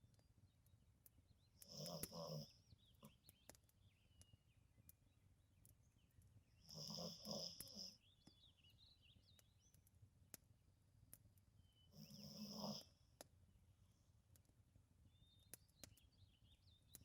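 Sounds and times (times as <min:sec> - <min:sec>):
faint clicks: 0:00.1 - 0:05.0, 0:05.6 - 0:10.5, 0:15.4 - 0:16.2
dog snoring: 0:01.6 - 0:02.5, 0:06.7 - 0:08.0, 0:12.0 - 0:12.9.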